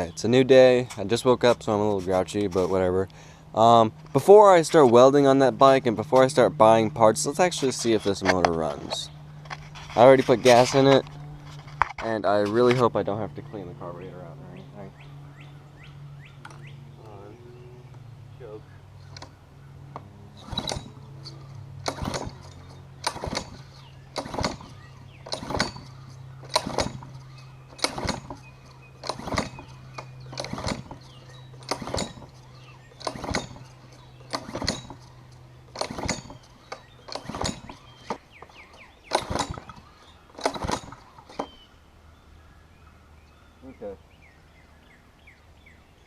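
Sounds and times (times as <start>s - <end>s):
small engine pull-start: 19.0s - 41.6s.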